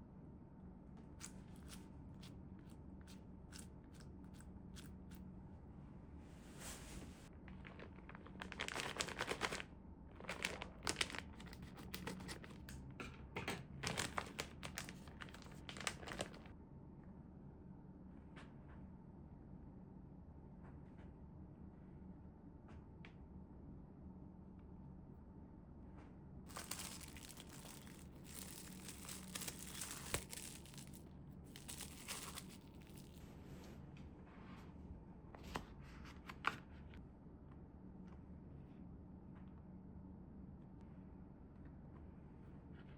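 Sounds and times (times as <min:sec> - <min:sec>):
plastic wrapping crinkling: 0:01.2 - 0:02.3, 0:06.6 - 0:12.8, 0:13.8 - 0:16.5, 0:26.5 - 0:33.2.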